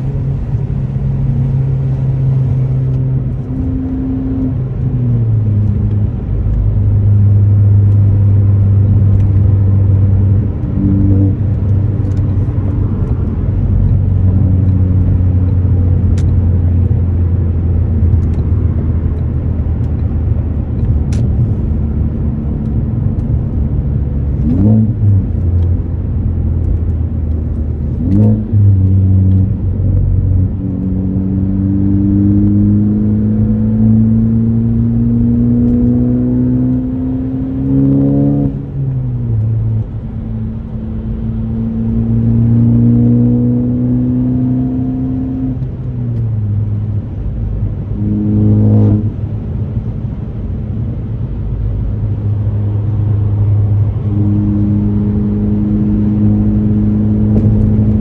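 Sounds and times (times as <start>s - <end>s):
car engine droning: 0.0s - 58.0s
engine rev blips: 48.0s - 49.2s.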